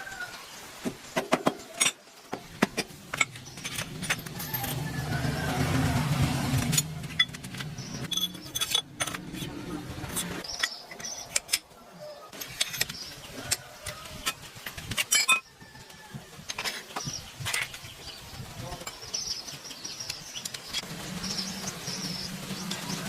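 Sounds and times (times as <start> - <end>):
metal tools clinking: 2.7 - 5.0, 6.6 - 9.5, 10.1 - 11.7, 12.4 - 15.5.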